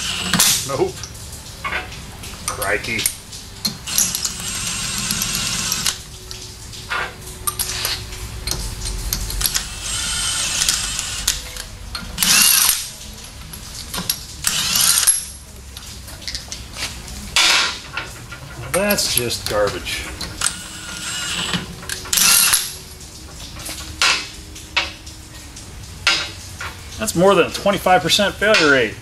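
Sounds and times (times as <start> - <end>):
power drill running in bursts: 0.0 - 0.5, 3.9 - 6.0, 9.6 - 11.4, 12.2 - 12.8.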